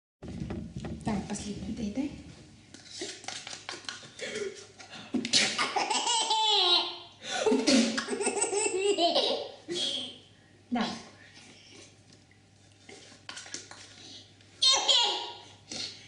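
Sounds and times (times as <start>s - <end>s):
baby laughing: 5.5s - 7.0s, 7.6s - 10.2s, 14.6s - 15.4s.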